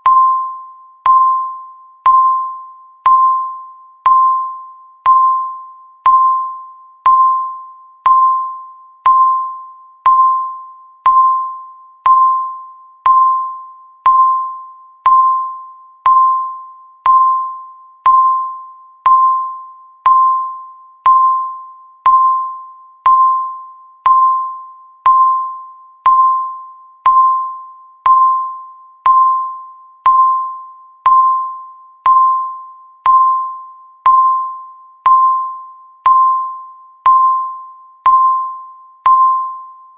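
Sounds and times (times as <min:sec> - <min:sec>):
countdown timer beeping: 0:00.0 - 0:39.8.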